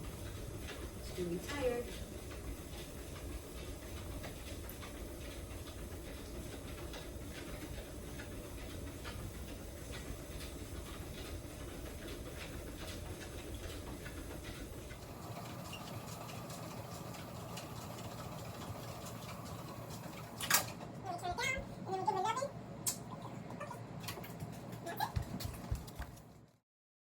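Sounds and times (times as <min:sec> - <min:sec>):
paws pattering on treadmill belt: 0:00.0 - 0:26.6
treadmill humming: 0:00.0 - 0:26.6.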